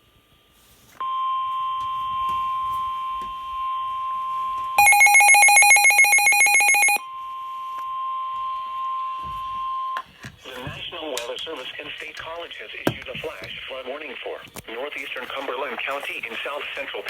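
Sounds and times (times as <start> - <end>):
steady warning alarm tone: 1.0 - 11.1.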